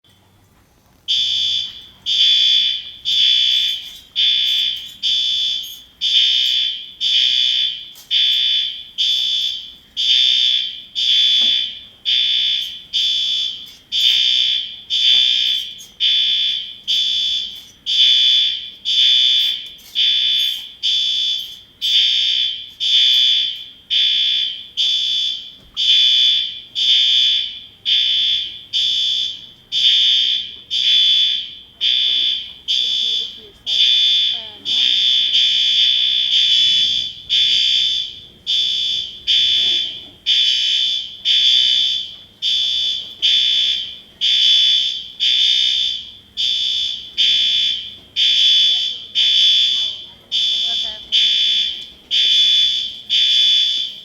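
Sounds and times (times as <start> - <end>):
fire alarm pulsing tone: 1.1 - 54.0.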